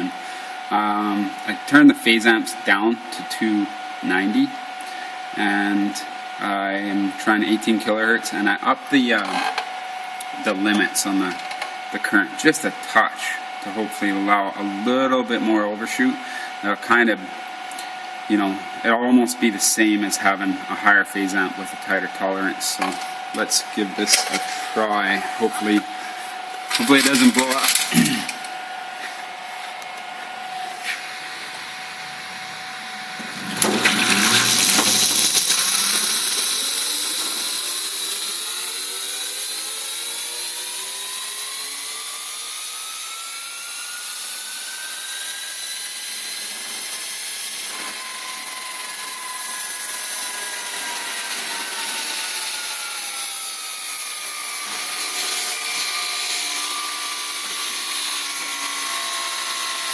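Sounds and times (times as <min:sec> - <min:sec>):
electric motor whining: 0:22.6 - 0:59.9.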